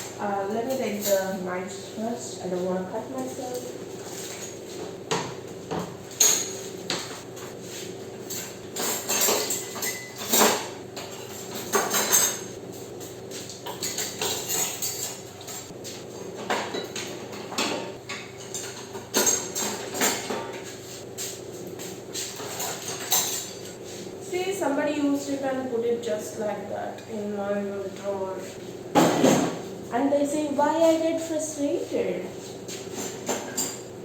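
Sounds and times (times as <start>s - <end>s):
metal cutlery clinking: 8.3s - 12.5s, 13.6s - 15.7s, 22.4s - 23.8s.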